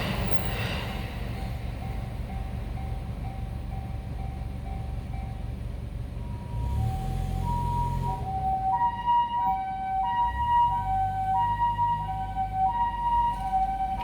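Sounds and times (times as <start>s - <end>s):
two-tone ambulance siren: 6.2s - 14.0s.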